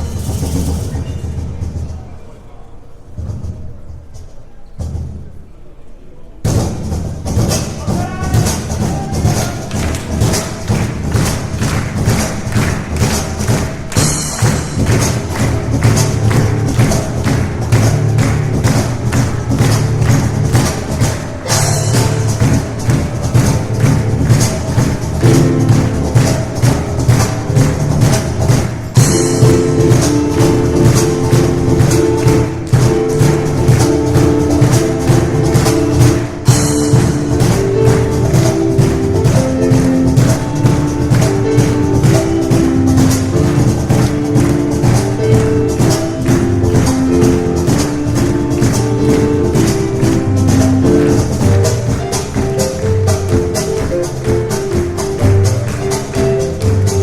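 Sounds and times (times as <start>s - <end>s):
piano melody: 0.0s - 2.2s, 7.4s - 57.0s
cajon strokes: 6.4s - 57.0s.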